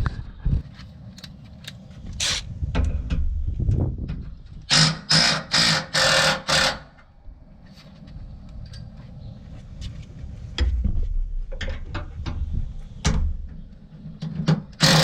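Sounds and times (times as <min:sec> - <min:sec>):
cordless impact wrench bursts: 0:04.7 - 0:06.9, 0:14.8 - 0:15.0.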